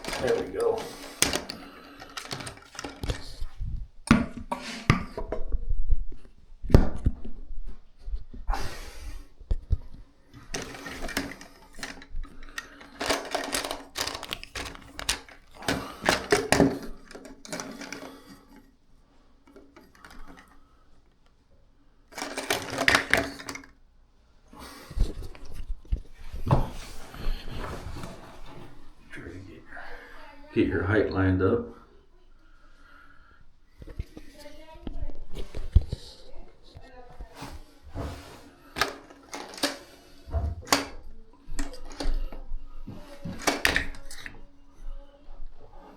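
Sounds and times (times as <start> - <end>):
plastic parts clicking and rattling: 0.0 - 5.5, 8.6 - 18.8, 19.4 - 21.4, 22.1 - 23.8, 33.8 - 45.0.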